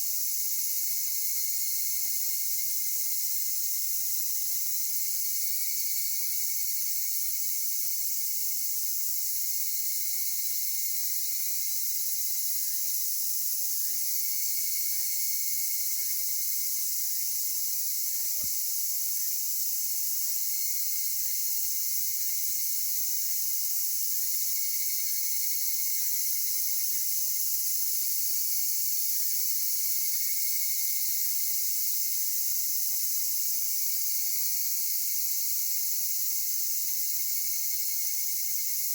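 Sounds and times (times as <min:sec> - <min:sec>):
insects shrill hiss: 0:00.0 - 0:38.9.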